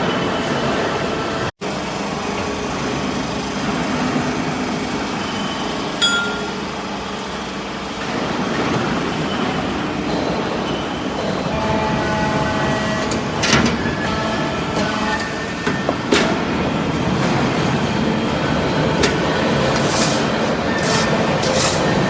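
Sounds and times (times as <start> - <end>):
hydraulic baler running: 0.0 - 22.0
sharp metallic clink: 6.0 - 6.6.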